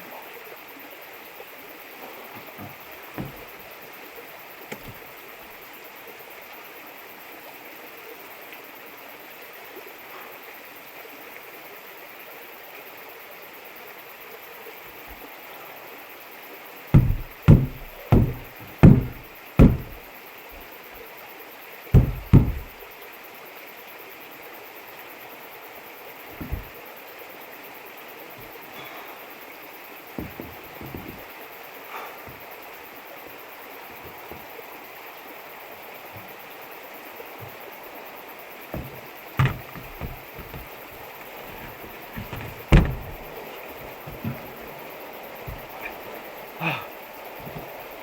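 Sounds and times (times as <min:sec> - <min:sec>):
hollow thumps on water tank: 0:02.3 - 0:03.5, 0:04.7 - 0:05.0, 0:17.0 - 0:20.1, 0:22.0 - 0:22.8, 0:26.4 - 0:26.8, 0:30.2 - 0:31.2, 0:38.7 - 0:46.2.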